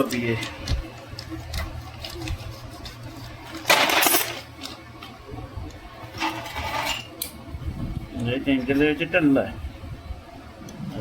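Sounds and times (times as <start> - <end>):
metal parts clinking: 3.6 - 4.4.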